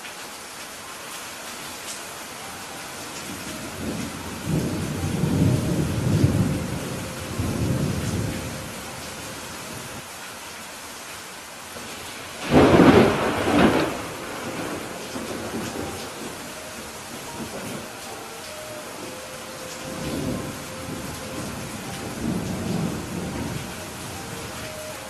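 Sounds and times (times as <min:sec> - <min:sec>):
steady rain: 0:00.0 - 0:25.0
thunder rumbling: 0:03.3 - 0:10.0, 0:12.3 - 0:25.0
sharp thunderclap: 0:12.4 - 0:16.3.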